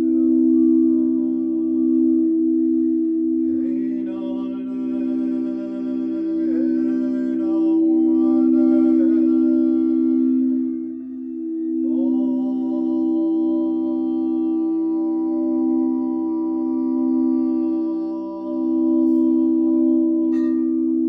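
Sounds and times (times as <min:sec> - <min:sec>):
singing bowl drone: 0:00.0 - 0:21.0
person chanting long notes: 0:03.4 - 0:11.2, 0:11.8 - 0:21.0.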